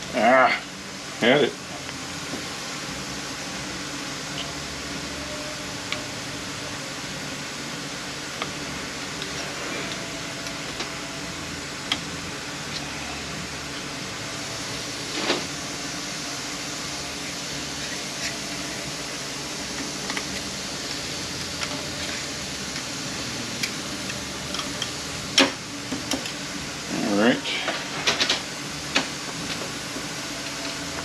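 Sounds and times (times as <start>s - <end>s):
fan-like hiss: 0.0s - 31.0s.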